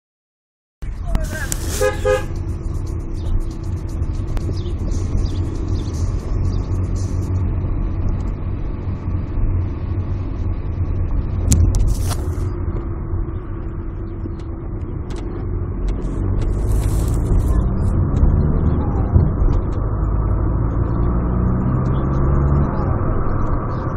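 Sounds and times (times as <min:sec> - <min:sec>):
diesel engine droning: 0:00.8 - 0:23.9.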